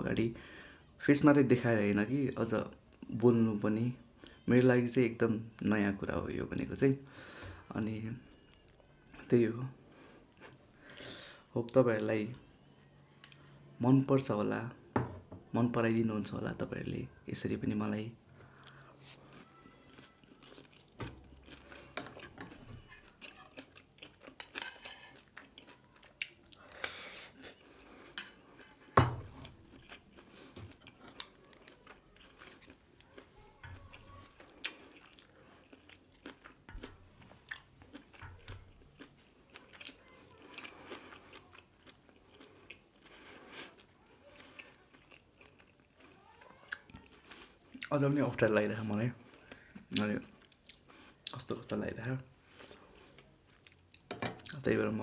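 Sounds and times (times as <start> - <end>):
person chewing food: 8.2 - 11.5, 18.2 - 48.3, 48.9 - 54.7.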